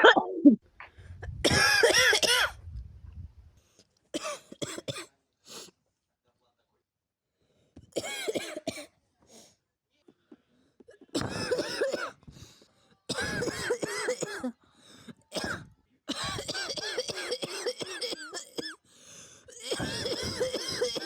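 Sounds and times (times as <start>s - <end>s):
person coughing harshly: 1.4s - 2.5s, 4.2s - 5.1s, 8.0s - 8.9s, 10.9s - 12.2s, 13.1s - 14.5s, 15.3s - 18.8s, 19.5s - 21.0s
faint breaths: 7.3s - 7.9s, 12.2s - 13.1s, 14.6s - 15.7s, 18.8s - 20.0s.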